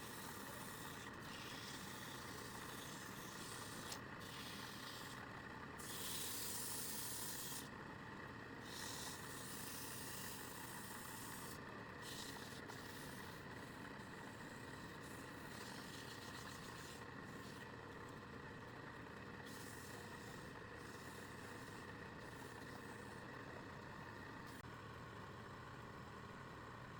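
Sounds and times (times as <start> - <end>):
tool hissing against spinning wood: 0.0 - 5.2, 5.8 - 7.7, 8.6 - 17.8, 19.4 - 23.4.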